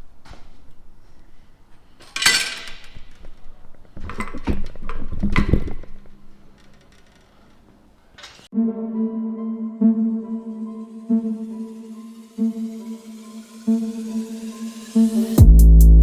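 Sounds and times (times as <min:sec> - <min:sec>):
metal knocks and rattles: 0:02.0 - 0:07.0.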